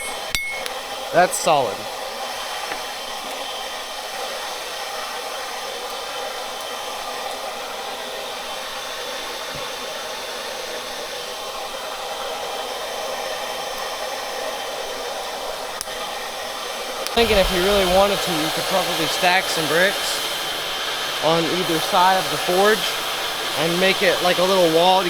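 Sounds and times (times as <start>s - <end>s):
air blower running: 0.0s - 25.0s.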